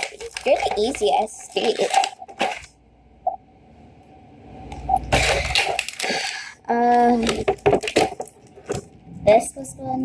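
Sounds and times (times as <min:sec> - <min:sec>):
plastic packaging crinkling: 0:00.0 - 0:02.7, 0:05.2 - 0:09.0.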